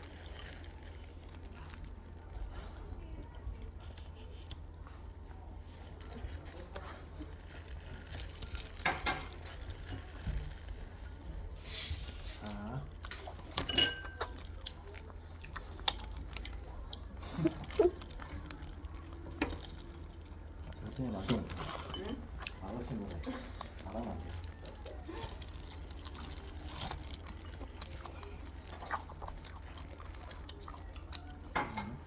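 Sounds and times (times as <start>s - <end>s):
chewing and biting: 0.0s - 11.6s, 12.4s - 32.0s
dishes and cutlery clinking: 8.6s - 10.1s, 13.1s - 14.5s, 21.2s - 22.4s, 31.5s - 32.0s.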